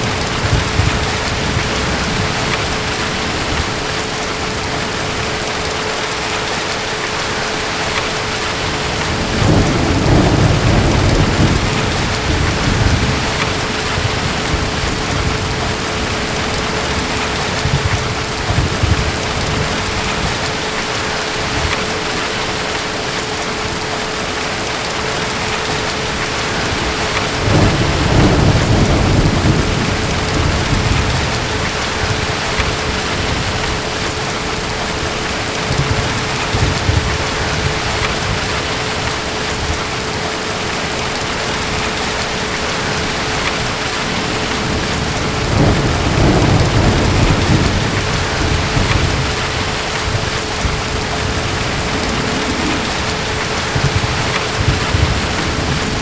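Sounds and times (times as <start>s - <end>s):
distant thunder rumbling: 0.0s - 22.4s, 25.2s - 56.0s
heavy rain: 0.0s - 56.0s.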